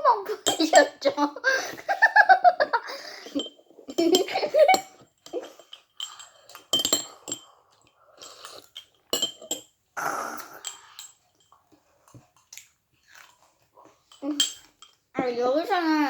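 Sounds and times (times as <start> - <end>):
person giggling: 1.5 - 4.8
spoon clinking against dish: 3.3 - 9.8, 10.6 - 12.2, 14.1 - 15.0.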